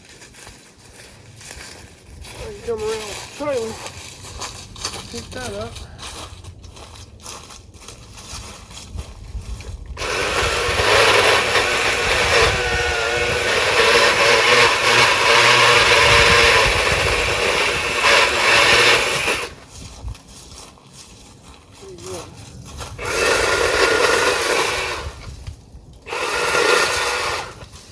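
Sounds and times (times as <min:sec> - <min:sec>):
pole saw cutting wood: 0:10.0 - 0:19.6, 0:23.0 - 0:25.3, 0:26.0 - 0:27.9.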